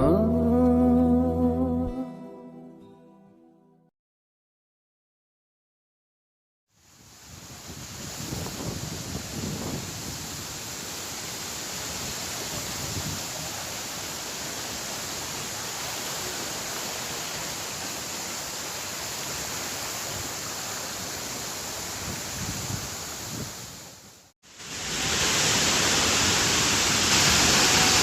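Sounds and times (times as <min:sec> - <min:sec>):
waterfall rushing: 0:07.2 - 0:23.9, 0:24.5 - 0:28.0
wind buffeting microphone: 0:07.6 - 0:10.4.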